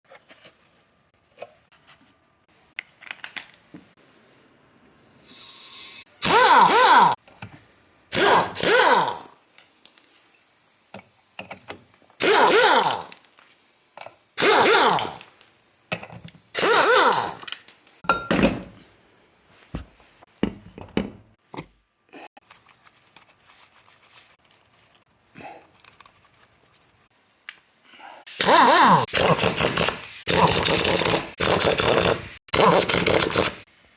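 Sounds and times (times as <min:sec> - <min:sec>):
impact wrench whirring: 0:06.2 - 0:07.2, 0:08.1 - 0:09.3, 0:12.2 - 0:13.1, 0:14.4 - 0:15.2, 0:16.6 - 0:17.4, 0:28.3 - 0:33.6.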